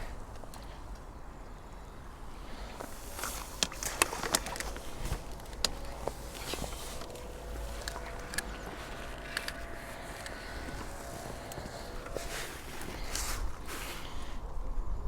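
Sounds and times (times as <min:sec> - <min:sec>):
distant bird calling: 0:00.8 - 0:14.5
fishing tackle clicks and knocks: 0:03.2 - 0:09.6.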